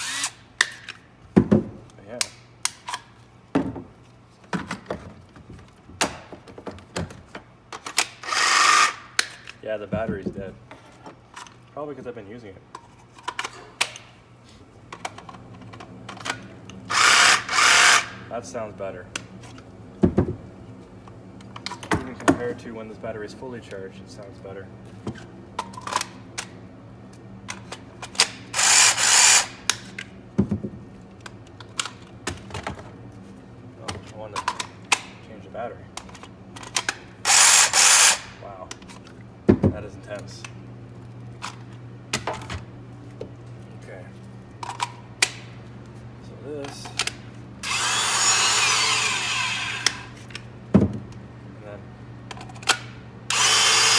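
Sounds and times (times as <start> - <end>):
cordless power tool burst: 0.0 - 0.4, 8.1 - 9.2, 16.9 - 18.2, 28.2 - 29.6, 37.2 - 38.4, 47.6 - 50.1, 53.3 - 53.9.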